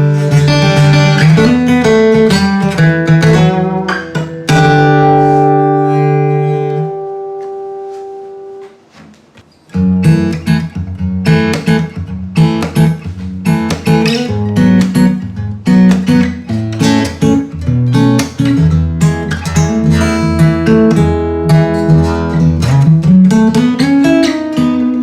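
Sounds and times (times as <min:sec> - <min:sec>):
acoustic guitar chord ringing: 0:00.0 - 0:09.0
acoustic guitar strumming and picking: 0:00.0 - 0:25.0.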